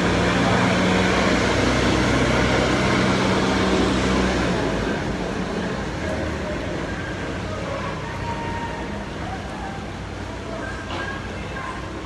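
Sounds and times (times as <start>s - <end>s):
vehicle engine running: 0.0s - 7.6s.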